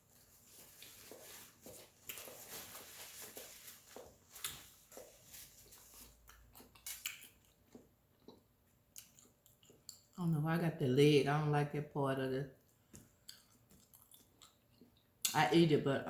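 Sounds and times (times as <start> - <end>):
person chewing food: 0.1 - 10.2, 12.6 - 15.3.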